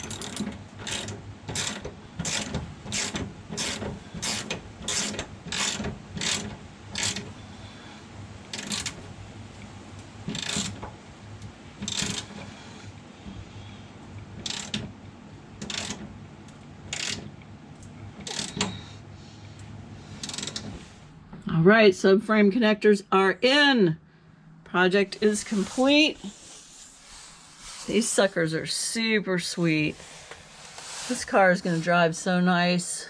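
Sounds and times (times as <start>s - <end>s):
ratchet wrench clicking: 14.4s - 14.8s, 15.6s - 16.0s, 16.9s - 17.2s, 20.2s - 20.6s.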